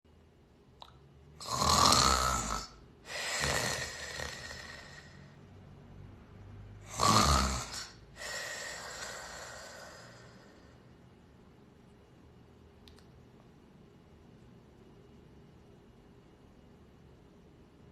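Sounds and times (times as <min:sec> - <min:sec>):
person snoring loudly: 0:01.4 - 0:05.4, 0:06.8 - 0:10.8.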